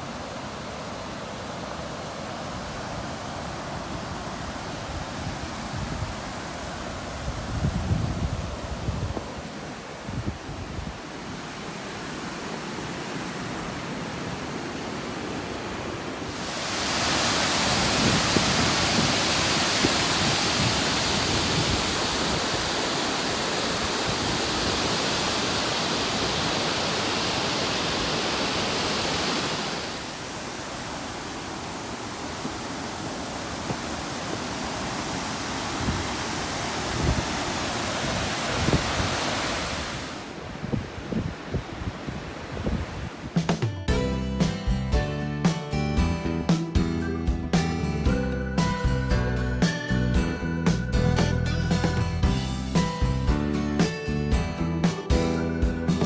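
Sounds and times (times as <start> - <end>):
river water rushing: 0.0 - 43.4.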